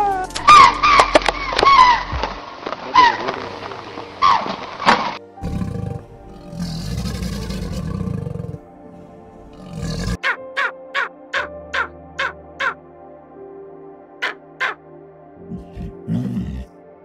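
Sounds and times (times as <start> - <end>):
background music: 0.0 - 17.0
deep rough animal roar: 5.4 - 8.8, 9.4 - 10.2, 15.4 - 16.8
crow cawing: 9.8 - 12.9, 14.2 - 14.9.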